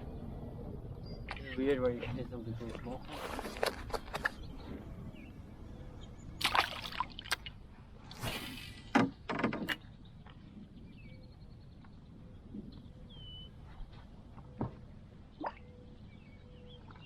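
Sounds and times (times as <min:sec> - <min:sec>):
water splashing and sloshing: 0:06.4 - 0:09.8.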